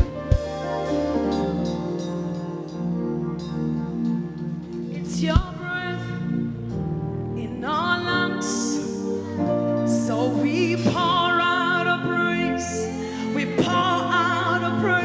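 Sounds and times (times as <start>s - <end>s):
held instrumental chords: 0.0s - 15.0s
solo voice singing: 7.4s - 15.0s.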